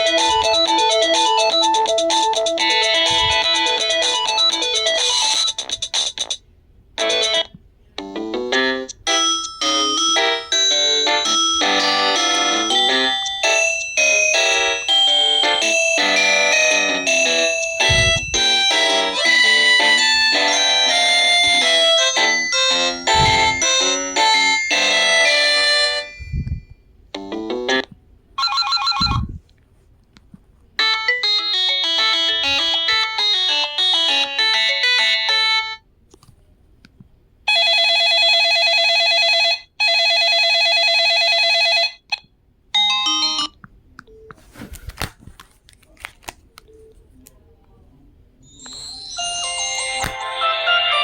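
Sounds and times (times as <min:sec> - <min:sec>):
phone ringtone melodies: 0:00.0 - 0:06.4, 0:07.0 - 0:07.5, 0:08.3 - 0:27.7, 0:28.4 - 0:29.4, 0:30.8 - 0:35.8, 0:37.5 - 0:42.0, 0:42.8 - 0:43.6, 0:48.5 - 0:51.0
two-tone phone ring: 0:00.0 - 0:06.4, 0:09.1 - 0:26.6, 0:28.4 - 0:29.3, 0:37.5 - 0:42.1.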